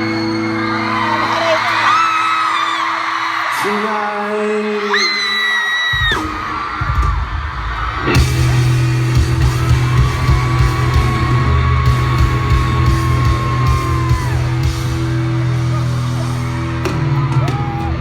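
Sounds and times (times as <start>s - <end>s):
crowd yelling: 0.0s - 18.0s
live pop-rock band playing: 8.0s - 18.0s.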